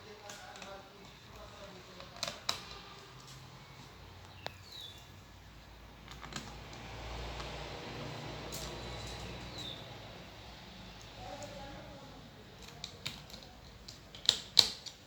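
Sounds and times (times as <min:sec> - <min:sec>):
laptop clicks and taps: 0:12.6 - 0:15.0.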